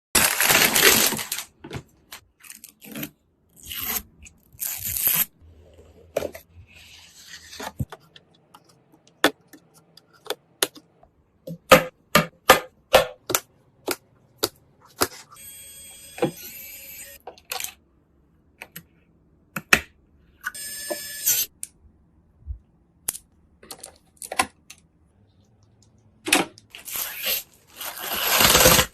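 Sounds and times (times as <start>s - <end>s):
boxes and wrappers rustling: 0.2s - 2.9s.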